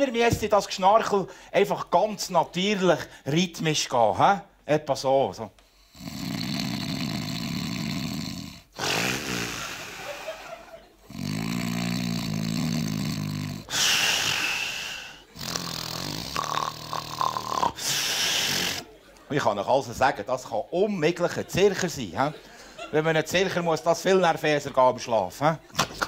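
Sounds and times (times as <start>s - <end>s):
man imitating snoring: 5.8s - 10.4s, 11.0s - 18.9s.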